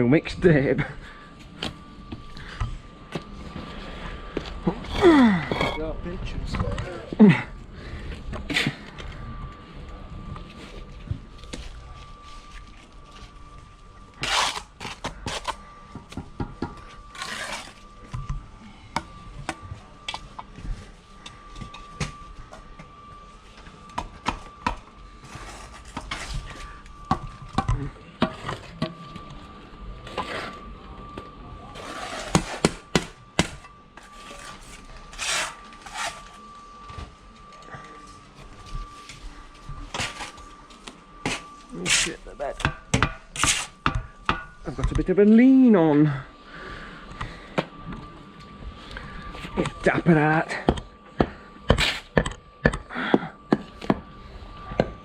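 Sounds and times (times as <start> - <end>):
trowel clinking and scraping: 14.2 - 15.6, 34.0 - 36.4.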